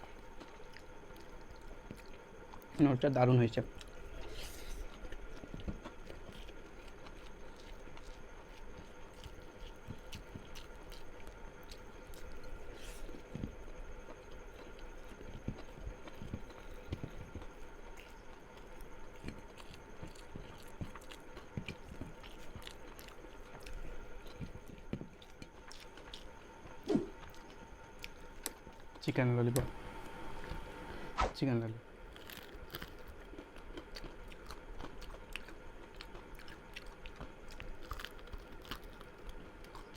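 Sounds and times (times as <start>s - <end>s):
person chewing food: 0.0s - 2.8s, 3.7s - 29.0s, 32.1s - 39.9s.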